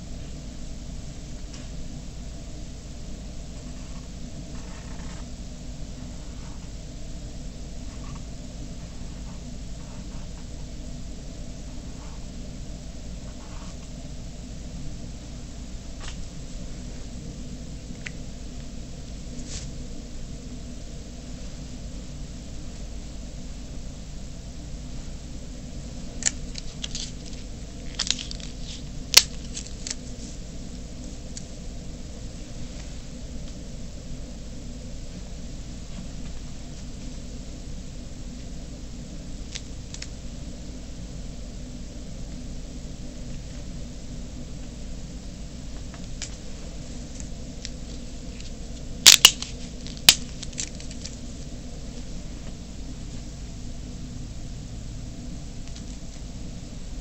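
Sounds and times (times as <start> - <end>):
steady low hum: 0.0 - 57.0
faint handling ticks: 25.9 - 31.6, 45.7 - 53.2
paper crinkling: 26.1 - 30.4, 47.1 - 51.5
sharp snap: 49.1 - 50.7
scissors snipping tape: 49.1 - 51.1.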